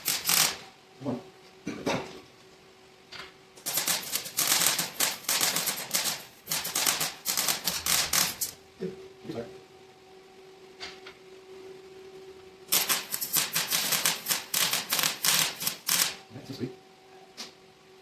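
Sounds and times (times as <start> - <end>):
welding crackle: 0.0 - 0.6, 3.6 - 8.6, 12.7 - 16.2.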